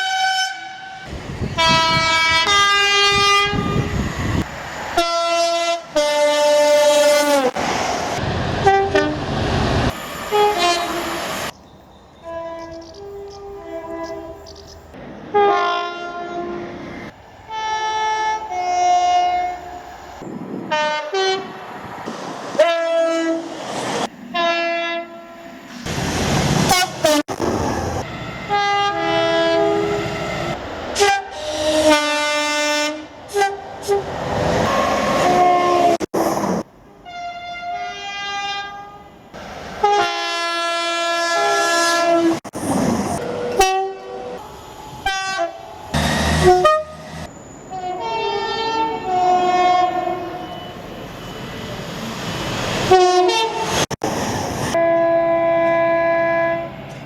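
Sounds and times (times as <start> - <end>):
train horns: 0.0 - 7.6, 8.6 - 9.4, 10.3 - 11.5, 12.2 - 14.5, 15.3 - 16.8, 17.4 - 19.9, 20.6 - 21.7, 22.5 - 23.6, 24.3 - 25.6, 26.6 - 27.4, 28.0 - 36.1, 36.9 - 42.6, 43.2 - 51.3, 52.8 - 54.0, 54.7 - 56.8
passing trains rushing: 0.0 - 57.0.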